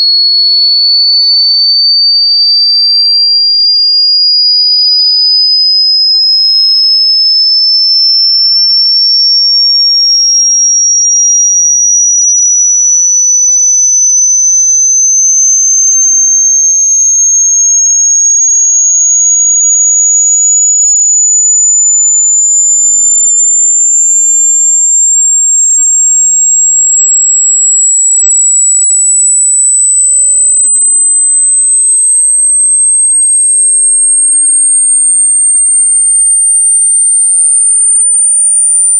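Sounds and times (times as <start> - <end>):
electronic tone rising in pitch: 20.6 - 38.9.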